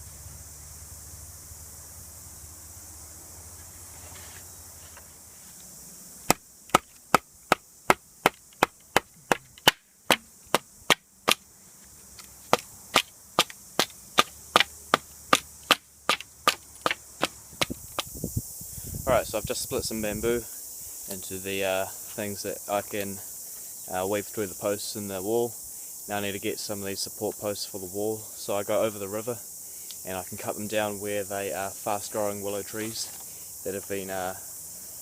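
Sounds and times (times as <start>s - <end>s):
chopping blows on bamboo: 6.3s - 11.5s, 12.5s - 18.2s.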